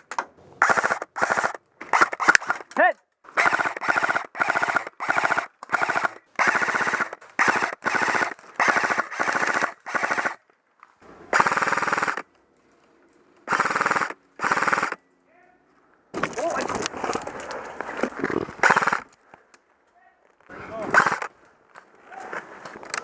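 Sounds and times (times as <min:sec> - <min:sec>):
airsoft gun firing bursts: 0:00.6 - 0:02.6, 0:03.3 - 0:10.4, 0:11.3 - 0:12.2, 0:13.5 - 0:15.0, 0:18.6 - 0:19.1, 0:20.9 - 0:21.3.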